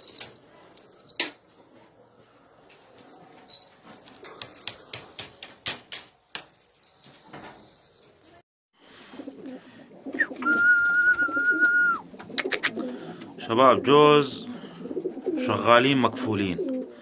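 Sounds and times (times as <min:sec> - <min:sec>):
pigeons tapping and clicking: 0:00.0 - 0:00.5, 0:03.0 - 0:06.6, 0:09.6 - 0:13.5
short high pigeon calls: 0:09.5 - 0:13.3.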